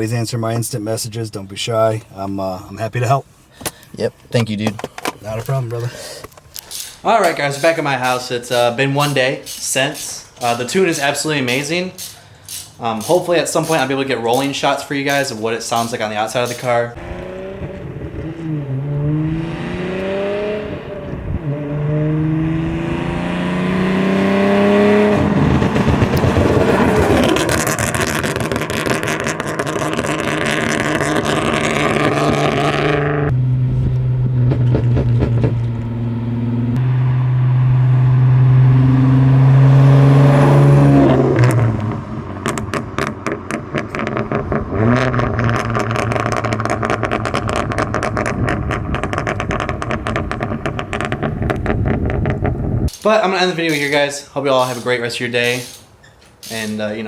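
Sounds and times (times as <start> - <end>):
exhaust crackles and pops: 2.8 - 9.1, 13.1 - 21.9, 25.0 - 38.1, 41.2 - 53.9
car engine accelerating: 16.9 - 52.9.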